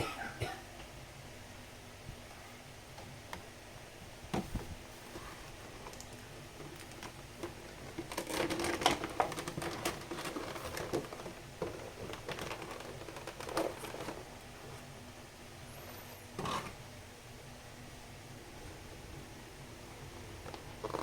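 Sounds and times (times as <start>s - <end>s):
packaging rustling and crinkling: 4.4s - 14.3s.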